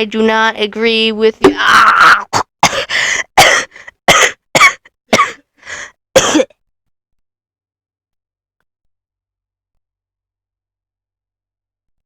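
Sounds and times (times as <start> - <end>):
person coughing violently: 2.4 - 5.5, 6.2 - 6.5.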